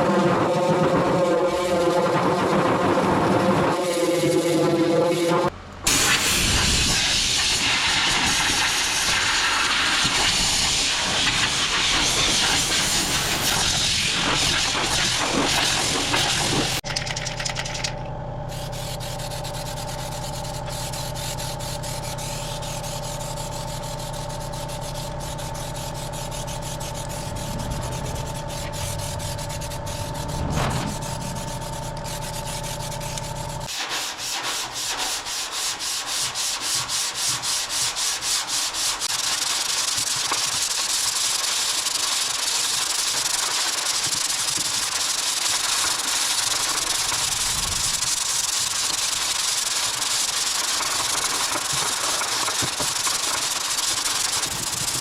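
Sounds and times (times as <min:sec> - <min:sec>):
machine hum with tones: 0:00.0 - 0:07.0, 0:07.7 - 0:33.7, 0:44.7 - 0:55.0
abrasive sanding on metal panel: 0:00.0 - 0:16.8, 0:18.5 - 0:55.0.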